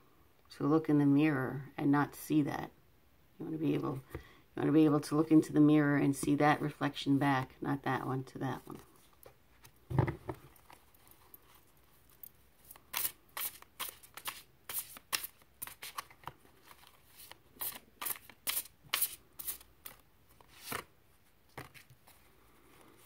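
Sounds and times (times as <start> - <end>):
cards being shuffled: 12.6 - 20.9.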